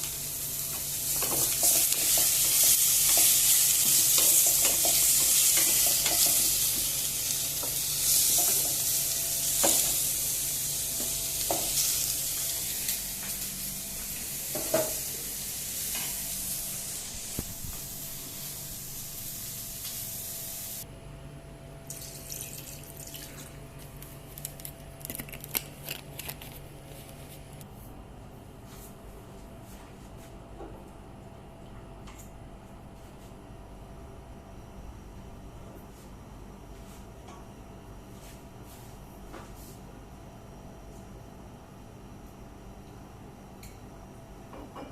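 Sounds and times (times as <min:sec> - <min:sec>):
food sizzling in a pan: 0:00.0 - 0:20.8.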